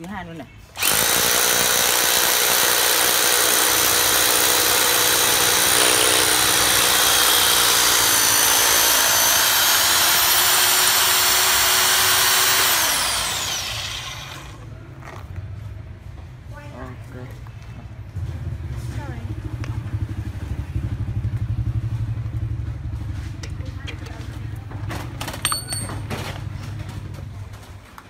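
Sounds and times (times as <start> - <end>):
rotary hammer drill drilling: 0.8 - 14.6.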